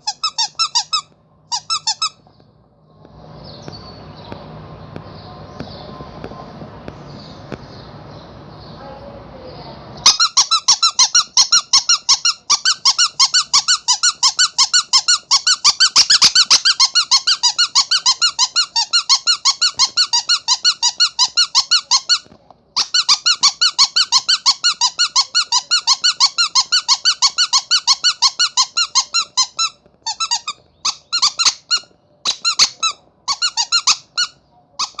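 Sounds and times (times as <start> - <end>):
rubber squeaky toy squeaking: 0.0 - 2.3, 10.0 - 35.0.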